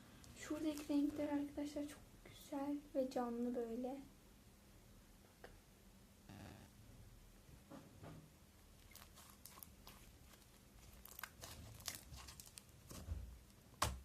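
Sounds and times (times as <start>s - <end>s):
slime crackling and popping: 8.8s - 13.0s.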